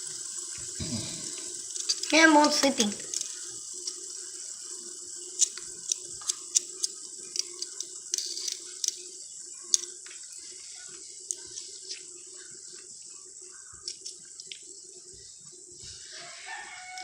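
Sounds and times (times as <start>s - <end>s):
fidget spinners whirring: 0.0s - 17.0s.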